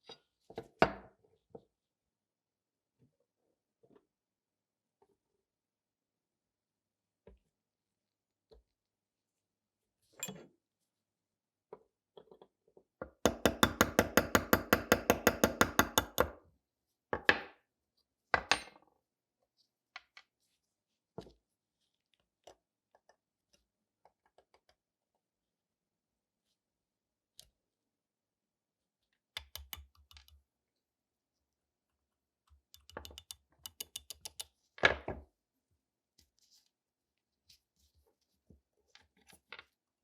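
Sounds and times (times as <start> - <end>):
metal clinks and taps: 32.8 - 34.5.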